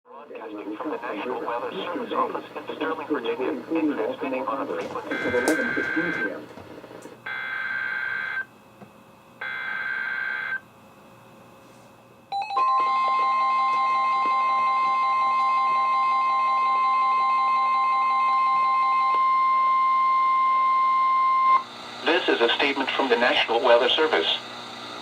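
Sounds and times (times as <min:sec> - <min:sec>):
steady warning alarm tone: 0:04.9 - 0:06.6, 0:07.2 - 0:08.5, 0:09.4 - 0:10.7, 0:12.3 - 0:21.7.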